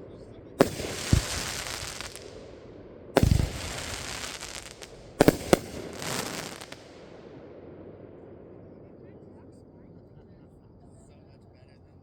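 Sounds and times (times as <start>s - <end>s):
fireworks booming and crackling: 0.0s - 8.2s
sharp firework bangs: 0.6s - 7.4s.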